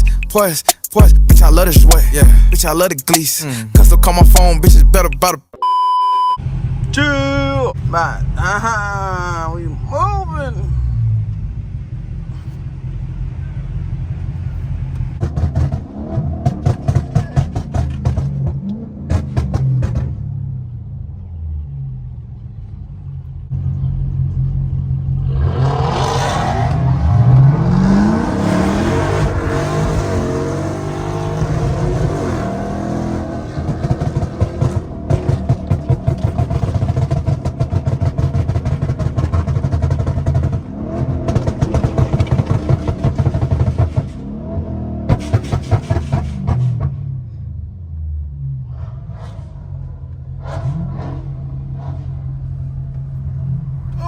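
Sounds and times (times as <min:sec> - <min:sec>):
choppy exhaust pulsing: 0:00.0 - 0:05.4, 0:26.9 - 0:44.3
car engine revving loud: 0:12.8 - 0:20.6, 0:23.6 - 0:47.0.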